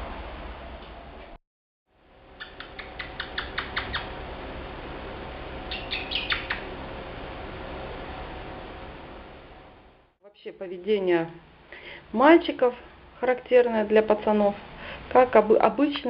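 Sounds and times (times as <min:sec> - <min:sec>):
cockatiel sharp calls: 0:05.7 - 0:06.7.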